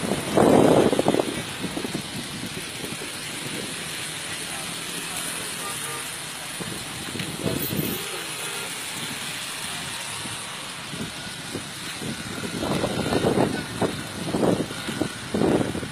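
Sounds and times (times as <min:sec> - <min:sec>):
traffic through water rushing: 0:00.0 - 0:15.9.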